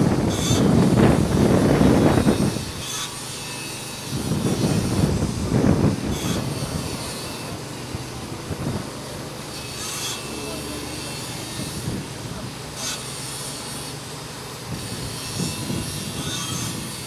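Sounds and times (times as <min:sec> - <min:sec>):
motor vehicles rumbling: 0:04.1 - 0:12.8.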